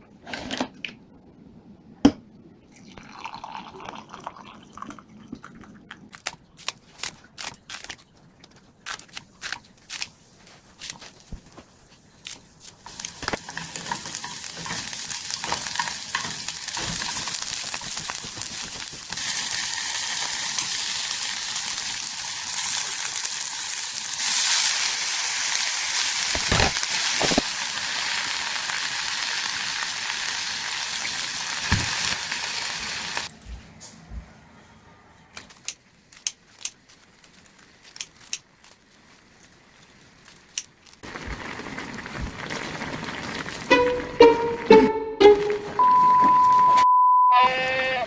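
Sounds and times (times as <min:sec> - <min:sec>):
food sizzling in a frying pan: 0:12.8 - 0:33.3, 0:41.0 - 0:44.6
utensil knocking against pan: 0:43.7 - 0:45.8.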